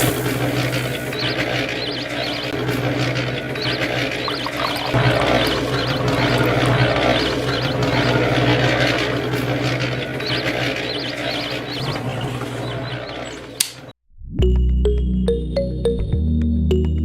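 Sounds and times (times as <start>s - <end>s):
rushing noise: 0.0s - 13.6s
small motor humming: 0.0s - 13.7s.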